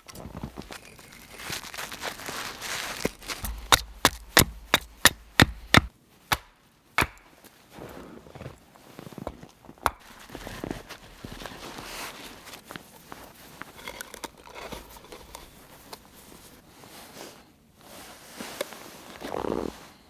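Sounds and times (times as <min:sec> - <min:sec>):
tool knocking on wood: 0:03.4 - 0:07.2.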